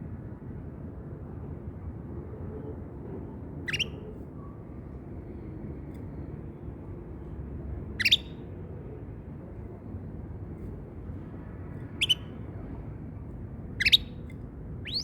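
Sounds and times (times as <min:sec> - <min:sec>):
canary chirps: 0:03.7 - 0:04.1, 0:08.0 - 0:08.4, 0:12.0 - 0:12.4, 0:13.7 - 0:15.0.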